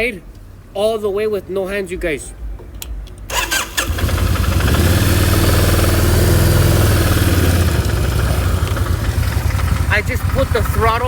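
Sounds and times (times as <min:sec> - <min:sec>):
motorcycle engine at steady throttle: 0:03.8 - 0:11.0.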